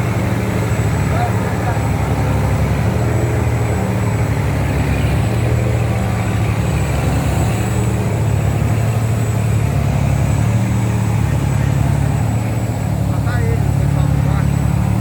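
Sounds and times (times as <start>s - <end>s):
boat engine droning: 0.0s - 15.0s.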